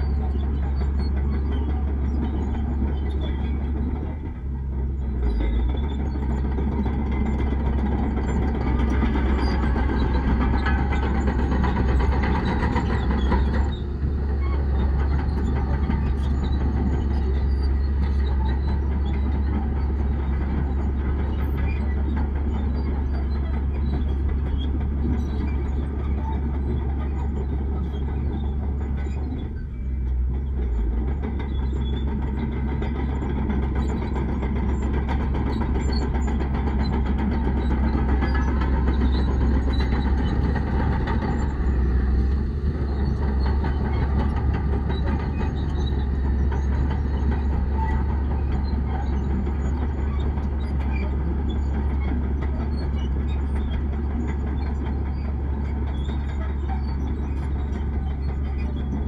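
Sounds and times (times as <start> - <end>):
diesel earthmoving machinery running: 0.0 - 59.0.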